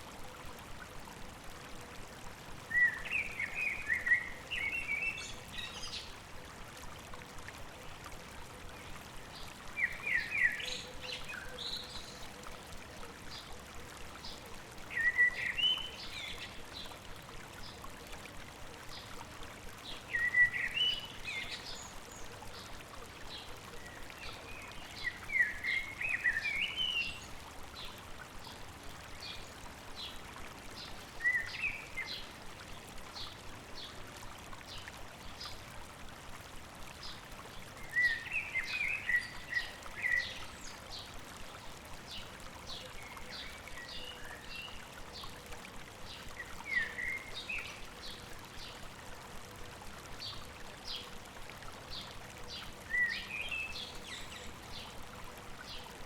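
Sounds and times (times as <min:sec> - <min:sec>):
stream rushing: 0:00.0 - 0:08.0.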